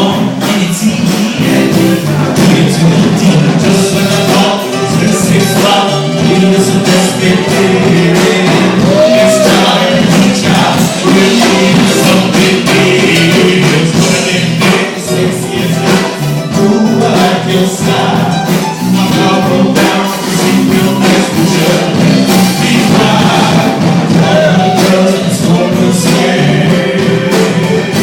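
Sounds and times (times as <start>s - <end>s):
band playing music: 0.0s - 28.0s
person singing: 0.0s - 28.0s.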